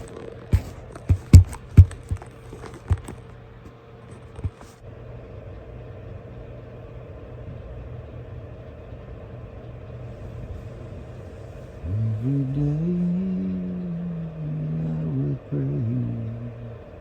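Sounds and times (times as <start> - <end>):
steady low hum: 0.0 - 17.0
sharp knocks: 0.6 - 3.2.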